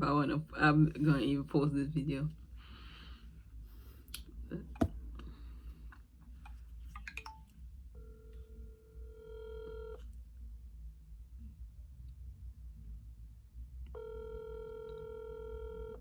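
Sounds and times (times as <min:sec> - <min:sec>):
phone ringback tone: 0:08.0 - 0:10.0, 0:14.0 - 0:16.0.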